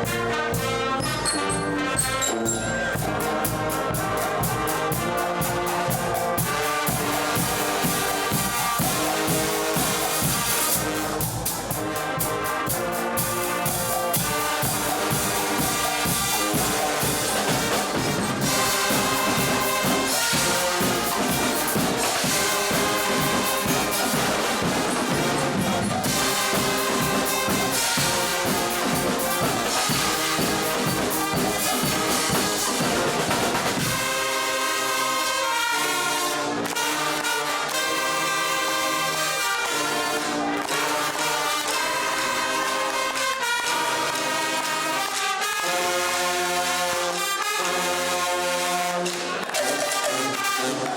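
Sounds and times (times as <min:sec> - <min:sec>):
steady drum beat: 0:00.0 - 0:34.7
trumpets and trombones: 0:00.0 - 0:50.9.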